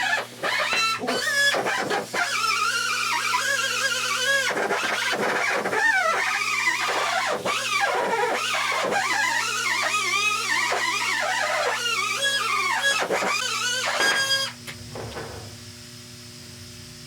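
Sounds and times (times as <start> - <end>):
polishing wheel squealing on metal: 0.0 - 14.6
power tool motor hum: 0.0 - 15.6.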